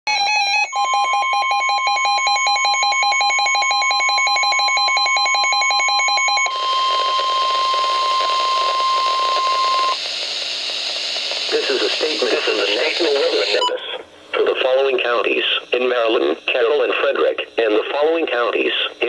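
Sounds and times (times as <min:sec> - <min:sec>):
steady high alarm tone: 0:00.1 - 0:10.0
radio hiss: 0:06.5 - 0:19.0.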